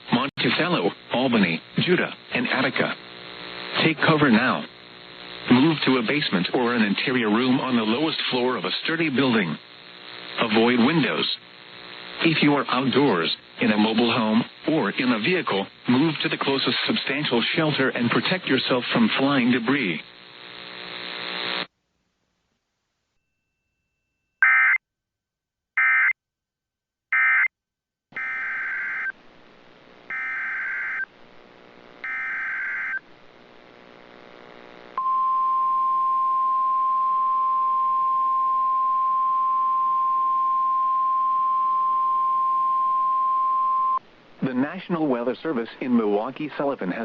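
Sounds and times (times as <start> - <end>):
screechy data bursts: 28.2 - 29.1, 30.1 - 31.1, 32.0 - 33.0
steady single-tone warning alarm: 28.2 - 29.1, 30.1 - 31.0, 32.0 - 33.0.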